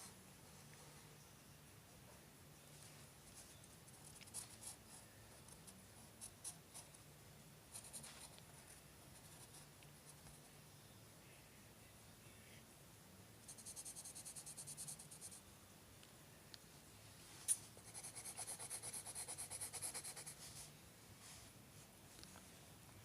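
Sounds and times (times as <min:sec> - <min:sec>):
pencil scratching on paper: 0:13.5 - 0:15.4, 0:17.8 - 0:20.6.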